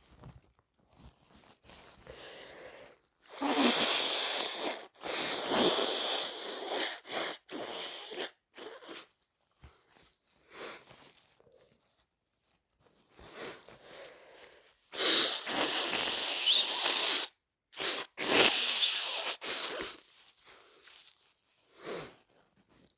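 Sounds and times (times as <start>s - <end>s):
person blowing nose: 2.1s - 9.1s, 14.9s - 20.0s, 21.7s - 22.2s.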